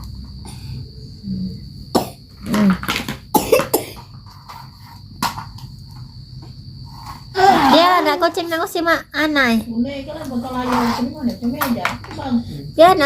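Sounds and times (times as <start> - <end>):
high insect trill: 0.0 - 13.0
child coughing: 3.3 - 4.1.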